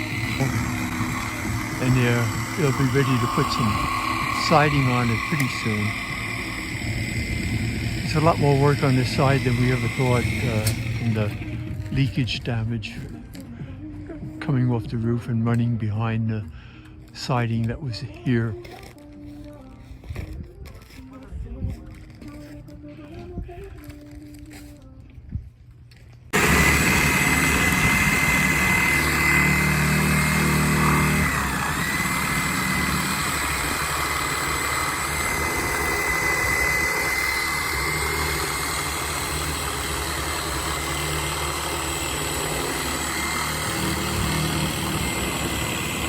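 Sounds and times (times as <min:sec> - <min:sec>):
steady high whine: 0:00.0 - 0:14.2, 0:26.3 - 0:46.0
engine running steadily: 0:00.0 - 0:14.5, 0:26.4 - 0:46.0.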